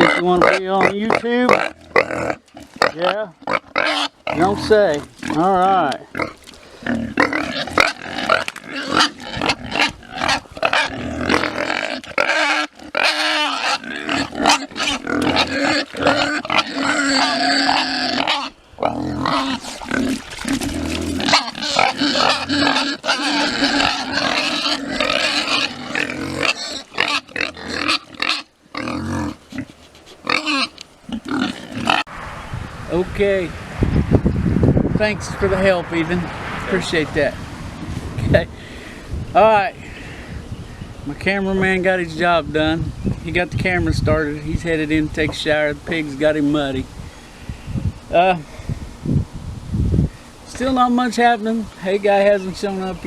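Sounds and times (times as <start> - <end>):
pigs grunting: 0.0 - 32.1.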